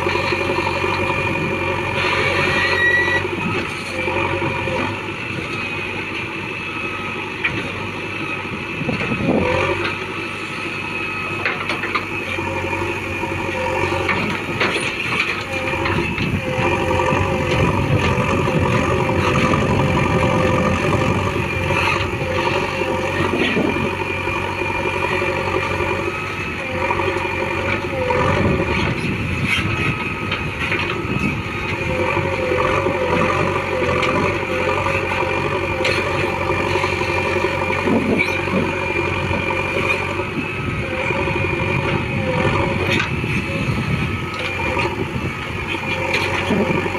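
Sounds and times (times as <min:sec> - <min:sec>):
diesel digger engine under load: 0:00.0 - 0:46.9
clanks and knocks of digging: 0:14.0 - 0:16.3, 0:35.8 - 0:36.9, 0:37.7 - 0:38.7, 0:45.7 - 0:46.9.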